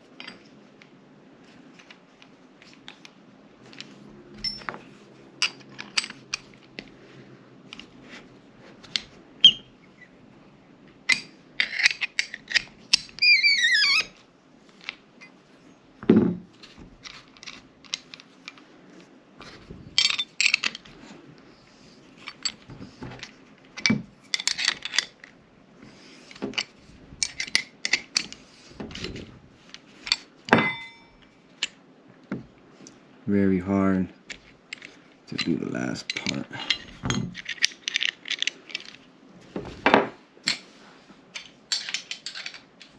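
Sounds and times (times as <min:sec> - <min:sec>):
metal tool clicks and clinks: 0:04.4 - 0:04.8, 0:30.1 - 0:31.2
short squeak: 0:13.2 - 0:14.1.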